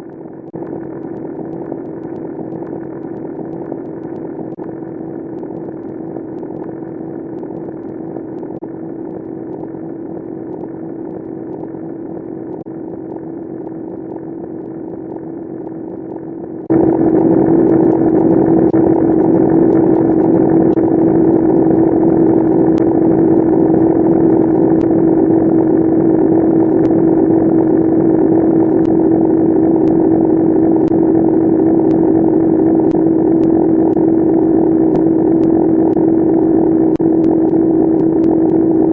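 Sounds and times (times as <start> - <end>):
sped-up ringtone buzzing drone: 0.0 - 38.9.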